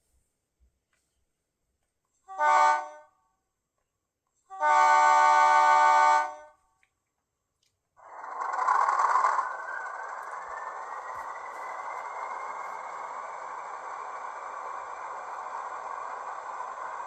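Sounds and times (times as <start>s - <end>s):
model locomotive horn blasts: 2.3s - 3.1s, 4.5s - 6.5s
rushing noise: 8.0s - 17.0s.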